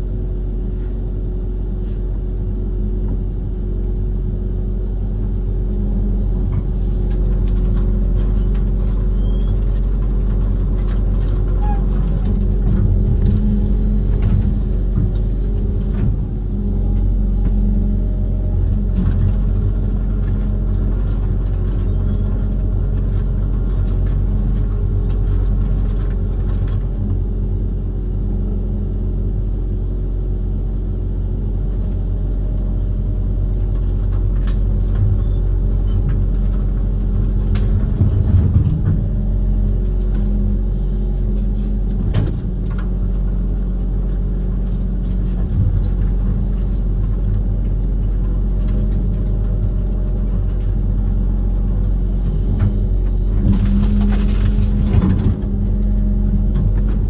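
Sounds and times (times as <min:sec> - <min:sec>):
excavator diesel engine running: 0:00.0 - 0:57.0
machine knocks and clanks: 0:05.1 - 0:21.4, 0:35.9 - 0:43.3, 0:52.2 - 0:57.0.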